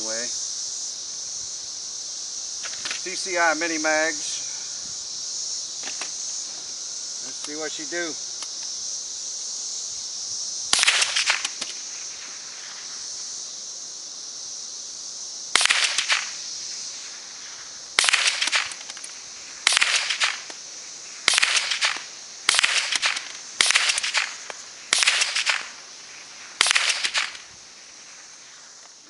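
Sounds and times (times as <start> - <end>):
rifle shots with echo: 10.7 - 11.6, 15.6 - 16.3, 18.0 - 18.8, 19.7 - 20.4, 21.3 - 25.7, 26.6 - 27.4.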